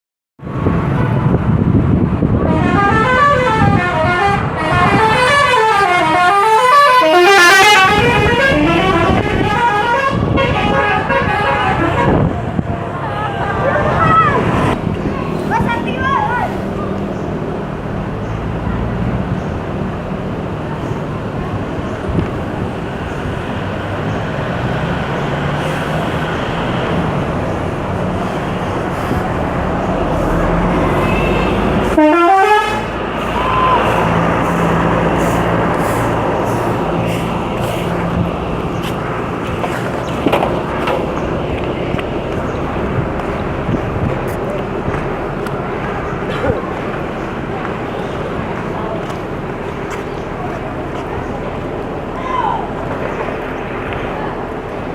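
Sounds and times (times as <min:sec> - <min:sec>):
bus engine rumble: 0:00.4 - 0:54.9
road noise: 0:00.4 - 0:54.9
musical air horn playing notes: 0:02.5 - 0:12.2, 0:30.8 - 0:37.3.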